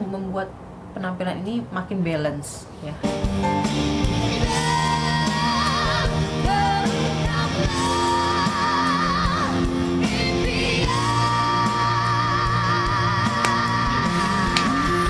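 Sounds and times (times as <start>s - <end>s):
singer with wide vibrato: 4.2s - 15.0s.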